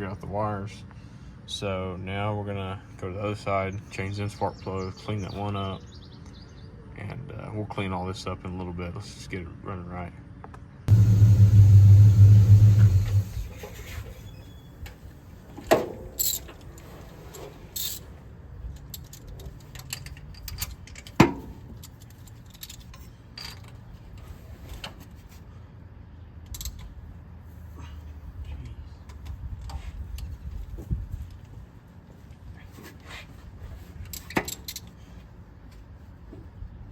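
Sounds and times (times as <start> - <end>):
loud low steady drone: 10.9 - 13.6.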